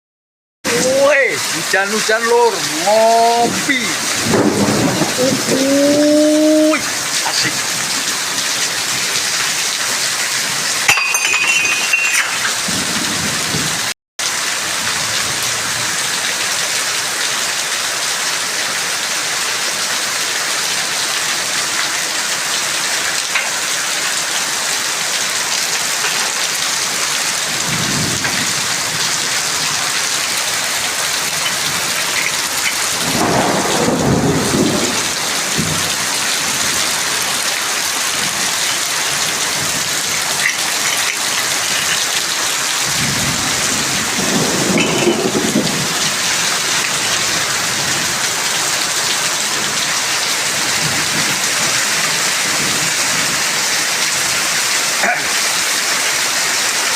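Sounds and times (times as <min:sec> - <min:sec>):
heavy rain pouring: 0:00.7 - 0:56.9
thunder rumbling: 0:03.4 - 0:08.0, 0:12.6 - 0:13.9, 0:27.5 - 0:29.8, 0:31.4 - 0:36.9, 0:42.8 - 0:48.2.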